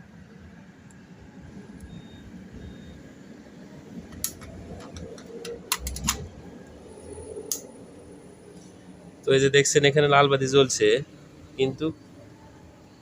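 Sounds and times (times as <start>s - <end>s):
faint low background noise: 0.0s - 13.0s
sharp clicks and knocks: 4.1s - 6.3s.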